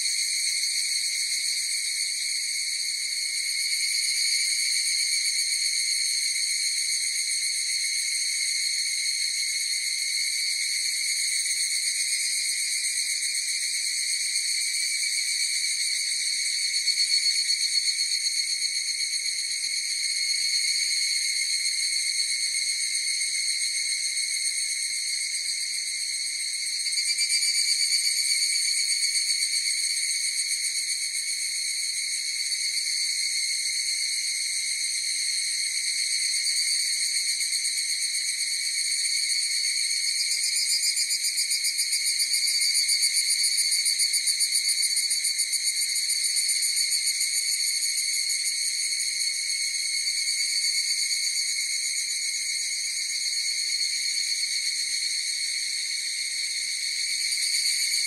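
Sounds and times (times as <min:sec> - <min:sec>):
cicadas trilling: 0:00.0 - 0:58.0.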